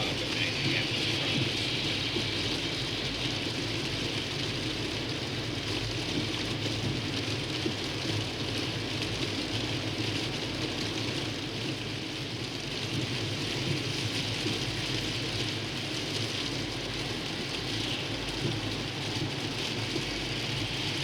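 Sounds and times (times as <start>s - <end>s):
tyres hissing through slush: 0.0s - 4.9s, 16.6s - 21.0s.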